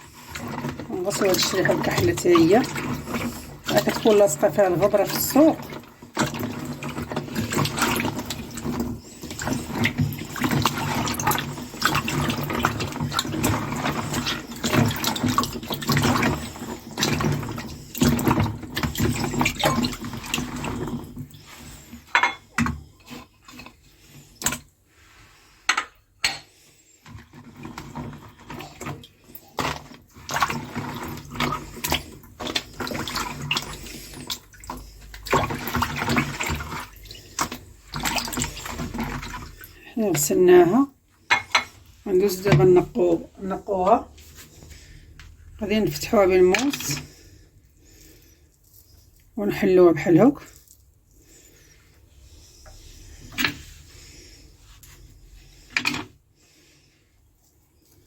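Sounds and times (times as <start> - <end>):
water splashing: 0.1 - 22.0, 27.7 - 40.8.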